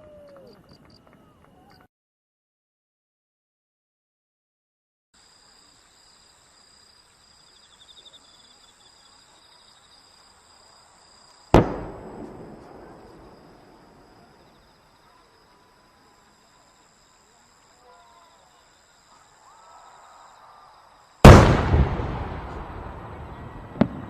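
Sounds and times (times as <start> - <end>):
rolling echo: 11.6 - 14.2, 21.2 - 24.0
firework shell bang: 21.2 - 23.0.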